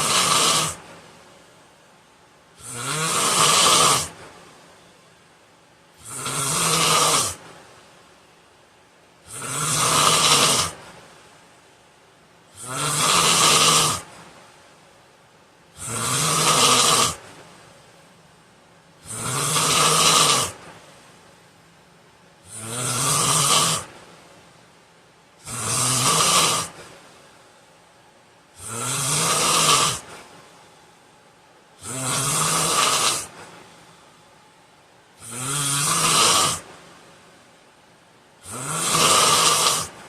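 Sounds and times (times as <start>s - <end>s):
man snoring: 0.0s - 0.8s, 2.6s - 4.2s, 6.0s - 7.4s, 9.3s - 10.8s, 12.5s - 14.1s, 15.8s - 17.2s, 19.0s - 20.6s, 22.4s - 23.9s, 25.4s - 26.8s, 28.6s - 30.1s, 31.8s - 33.4s, 35.2s - 36.7s, 38.4s - 40.0s
quiet breathing: 29.8s - 31.2s.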